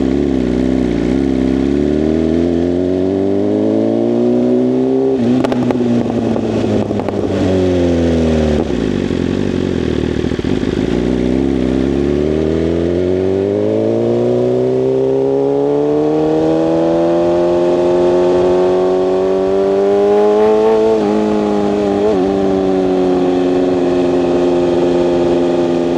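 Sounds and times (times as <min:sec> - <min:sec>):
motorcycle engine accelerating: 0:00.0 - 0:25.9.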